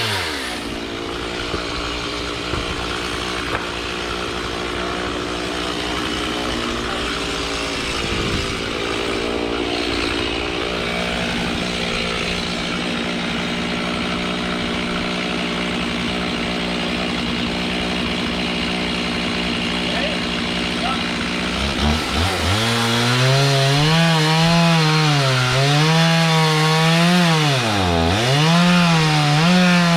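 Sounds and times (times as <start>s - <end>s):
chainsaw cutting wood: 0.0s - 29.9s.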